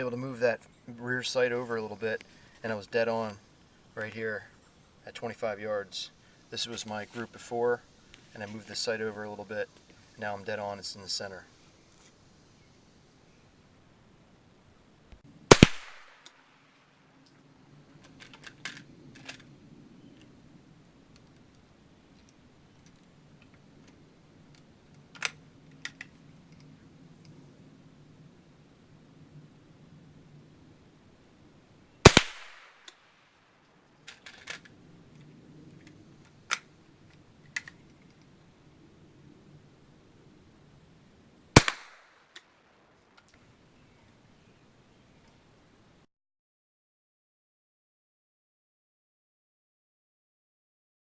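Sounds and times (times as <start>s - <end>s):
rifle shot crack: 15.5s - 16.7s, 32.0s - 33.3s, 41.6s - 42.4s.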